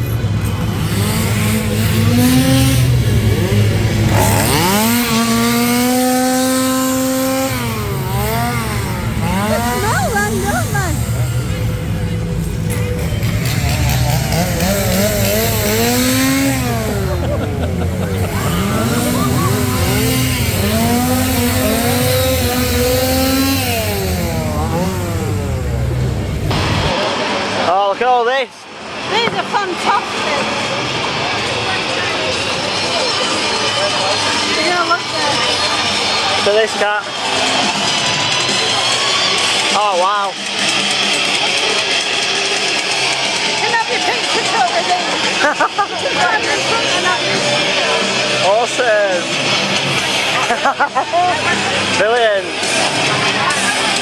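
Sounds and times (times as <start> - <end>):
chainsaws revving: 0.0 - 27.0, 37.1 - 54.0
low drone: 0.0 - 29.1.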